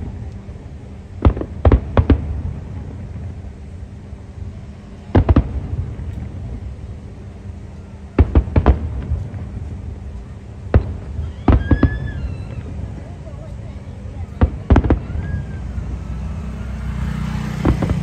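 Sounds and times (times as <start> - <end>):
low steady background noise: 0.0 - 18.0
fireworks shells bursting: 17.5 - 18.0.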